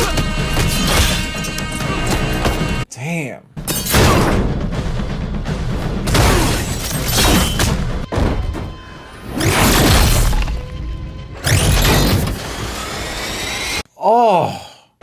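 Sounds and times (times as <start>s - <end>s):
dramatic film score: 4.0s - 12.1s.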